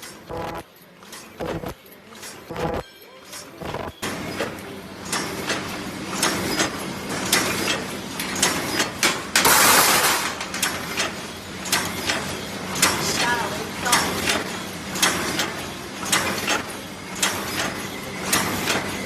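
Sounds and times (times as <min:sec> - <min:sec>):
machine clattering: 0:00.0 - 0:19.0
machine hum: 0:00.3 - 0:00.7, 0:01.4 - 0:01.8, 0:02.5 - 0:02.8, 0:03.6 - 0:04.3.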